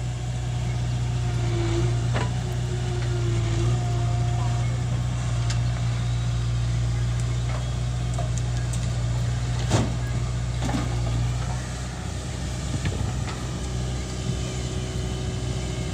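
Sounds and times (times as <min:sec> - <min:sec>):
diesel engine droning: 0:00.0 - 0:15.9.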